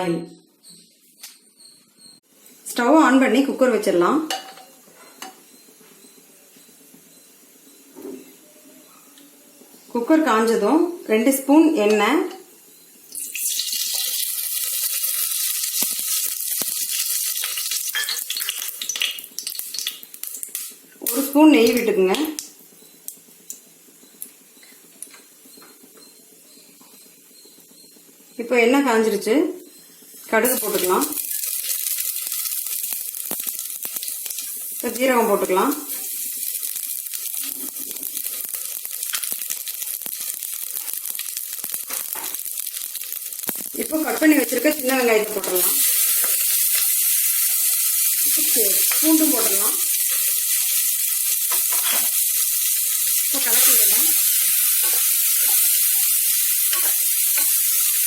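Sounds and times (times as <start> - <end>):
oil sizzling with crackles: 12.6 - 25.5, 29.7 - 58.0
mustard seeds popping: 30.6 - 34.5, 36.0 - 47.6.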